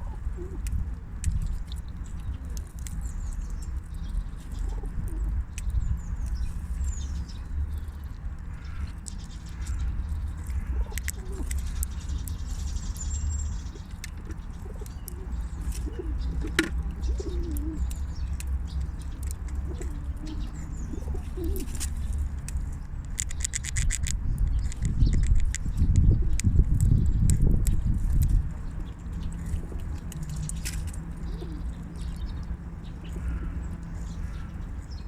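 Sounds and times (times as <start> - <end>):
soft low wavering calls: 0.0 - 0.7, 1.6 - 5.4, 8.5 - 21.8, 28.5 - 35.0
steady low rumble: 0.0 - 35.0.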